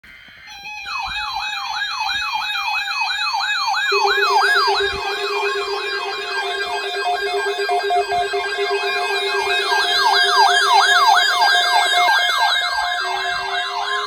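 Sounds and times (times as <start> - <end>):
electronic siren yelping: 0.4 - 14.0
steady low tone: 3.9 - 14.0.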